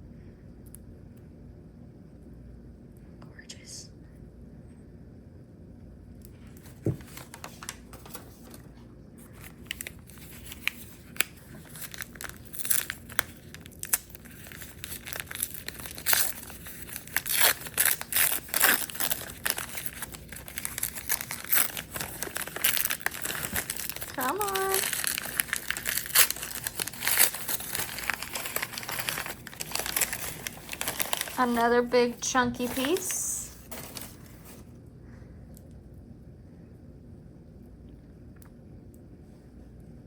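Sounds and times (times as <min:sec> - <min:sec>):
packing wrap crinkling and tearing: 0:06.6 - 0:34.6.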